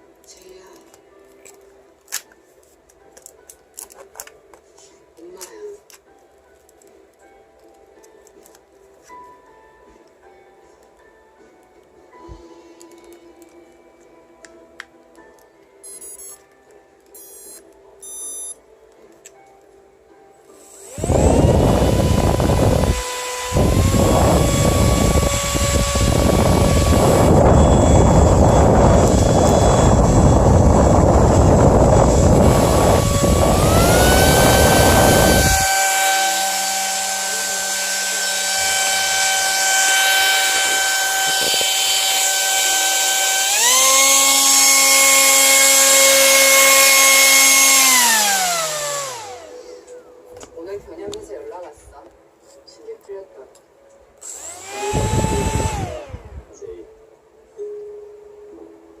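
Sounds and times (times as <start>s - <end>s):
electric motor high whine: 20.6s - 49.9s, 54.2s - 56.5s.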